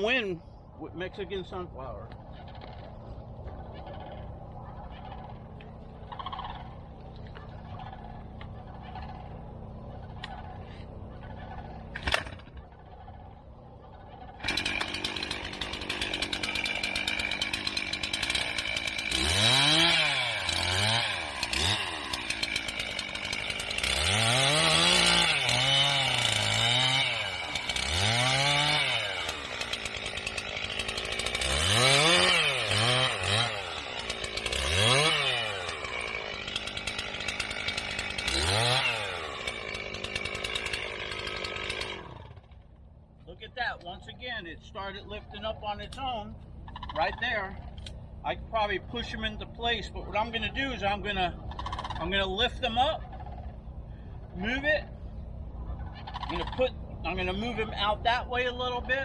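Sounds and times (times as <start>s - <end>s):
chainsaw revving through stalks: 14.3s - 42.8s.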